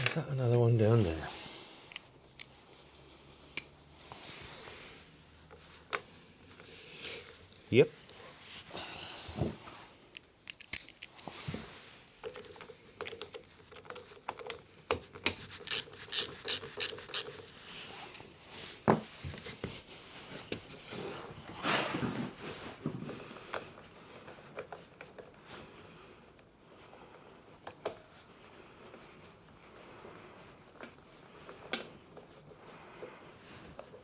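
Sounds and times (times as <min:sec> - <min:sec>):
tools clicking on metal parts: 0:10.1 - 0:11.3.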